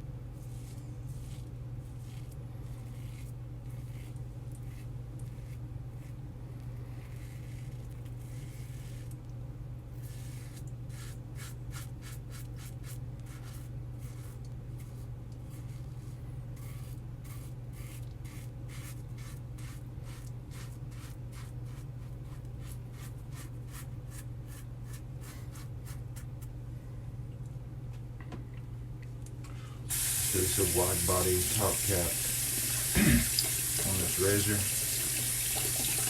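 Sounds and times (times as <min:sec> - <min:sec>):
steady low hum: 0:00.0 - 0:35.4
razor scraping stubble: 0:00.5 - 0:09.2, 0:10.0 - 0:26.3, 0:29.9 - 0:32.2.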